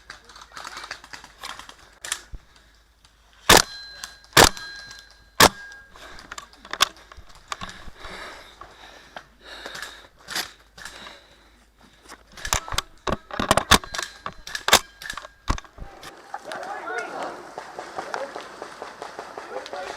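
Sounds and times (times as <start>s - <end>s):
handling clicks and rustling: 0.0s - 19.9s
airsoft rifle shots: 3.5s - 5.8s.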